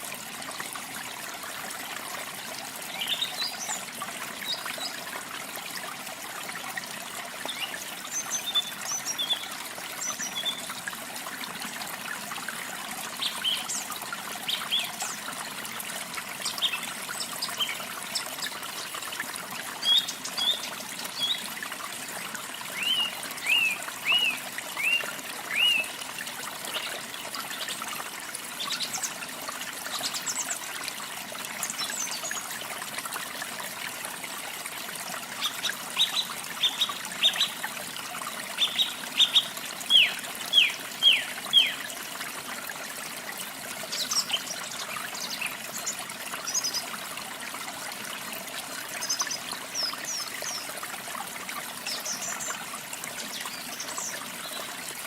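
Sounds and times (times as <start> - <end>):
songbirds singing: 2.9 - 5.0, 7.4 - 10.7, 19.8 - 21.5, 22.7 - 26.0, 35.4 - 37.6, 38.6 - 41.9.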